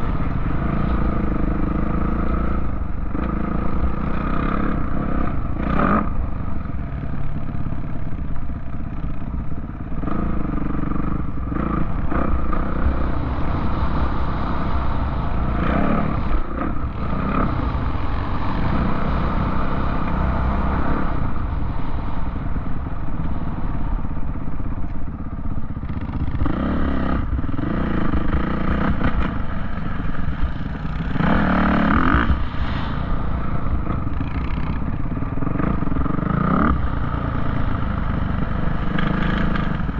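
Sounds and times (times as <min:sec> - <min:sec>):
off-road vehicle engine revving: 0:09.9 - 0:21.4, 0:25.9 - 0:39.9.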